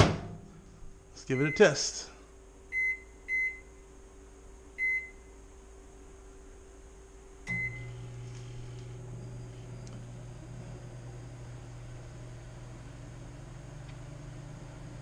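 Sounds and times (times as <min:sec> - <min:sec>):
microwave humming: 0:00.0 - 0:15.0
microwave keypad beeping: 0:01.4 - 0:01.8, 0:02.7 - 0:03.6, 0:04.8 - 0:05.2, 0:07.5 - 0:08.0.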